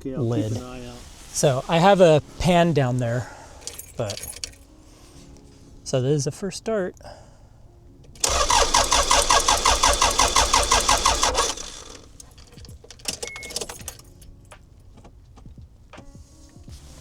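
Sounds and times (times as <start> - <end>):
starter motor cranking diesel engine: 8.1 - 13.7.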